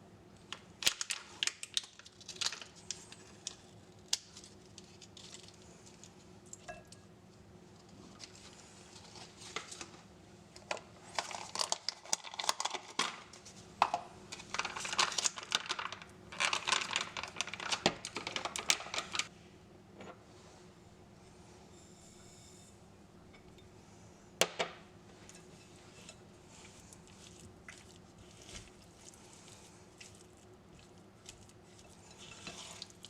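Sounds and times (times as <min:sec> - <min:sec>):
crinkling and rustling: 0:07.8 - 0:19.3.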